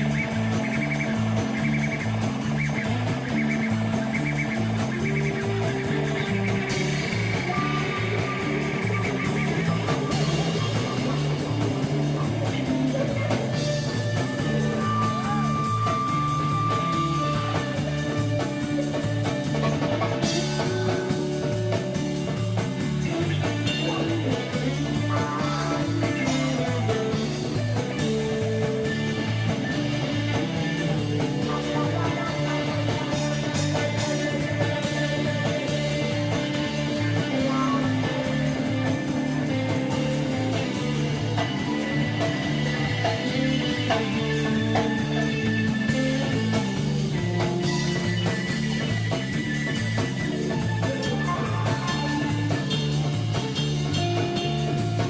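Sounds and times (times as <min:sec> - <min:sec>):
held guitar notes: 0:00.0 - 0:55.0
rock band playing: 0:00.0 - 0:55.0.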